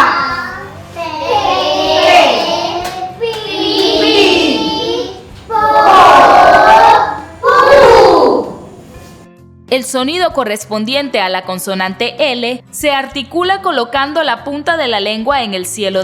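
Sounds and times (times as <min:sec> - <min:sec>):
children chanting in unison: 0:00.0 - 0:08.7.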